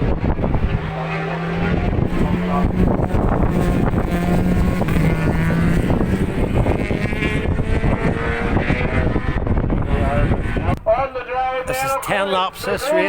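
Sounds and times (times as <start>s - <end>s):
wind buffeting microphone: 0.0s - 11.8s
motorcycle engines at high revs: 0.0s - 13.0s.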